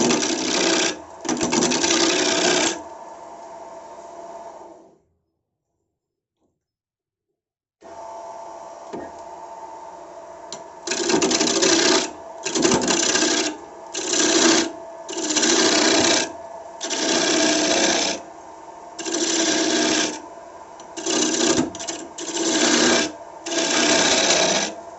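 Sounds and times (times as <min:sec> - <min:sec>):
turning tool rasping cuts: 0:00.0 - 0:02.8, 0:10.8 - 0:18.3, 0:19.0 - 0:24.8
lathe motor hum: 0:00.0 - 0:04.6, 0:09.0 - 0:24.9.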